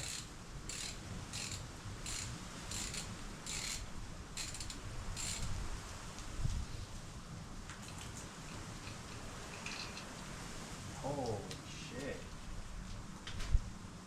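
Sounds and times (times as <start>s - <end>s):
socket ratchet clicking: 0.0s - 3.8s, 4.4s - 5.5s.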